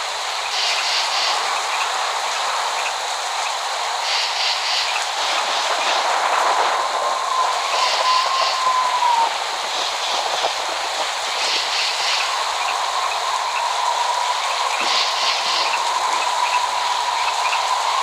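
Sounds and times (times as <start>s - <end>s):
steady rain falling: 0.0s - 18.0s
faint whistle-like tone: 7.4s - 9.3s.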